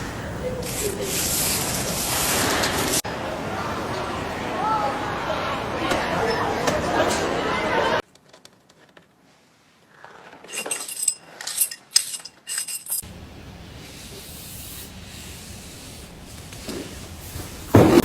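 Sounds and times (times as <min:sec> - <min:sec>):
steady hiss: 0:00.0 - 0:03.0, 0:13.0 - 0:18.0.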